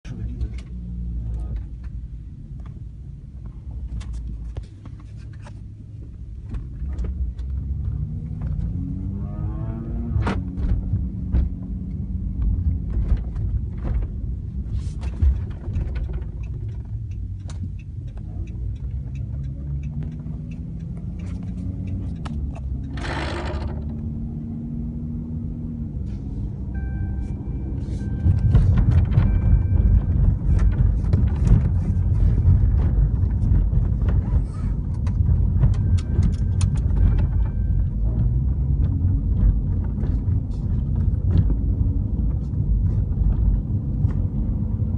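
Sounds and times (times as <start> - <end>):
road and engine rumble in car: 0.0 - 44.9
harsh rattle: 22.9 - 23.9.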